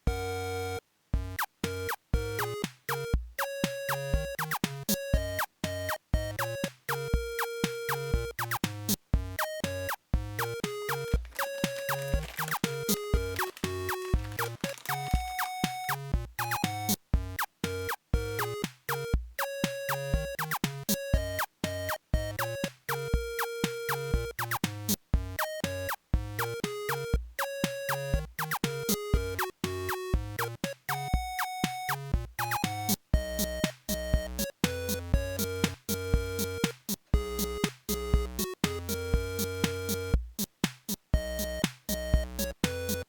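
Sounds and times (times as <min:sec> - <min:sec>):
bouncy synthesized music: 0:01.7 - 0:08.6, 0:09.4 - 0:17.0, 0:27.9 - 0:40.5, 0:41.2 - 0:43.0
electronic music: 0:10.9 - 0:16.7.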